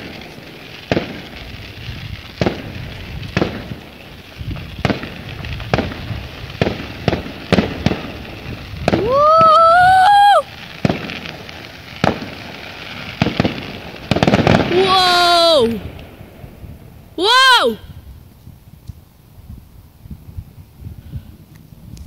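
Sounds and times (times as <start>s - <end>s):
fireworks bangs with echo: 0.0s - 17.5s.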